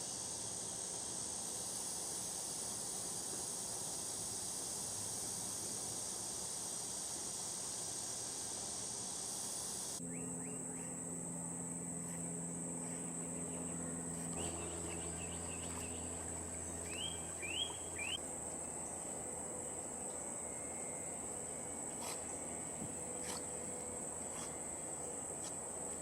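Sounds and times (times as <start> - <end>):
high-pitched insect drone: 0.0 - 26.0
short rising chirps: 13.5 - 18.2.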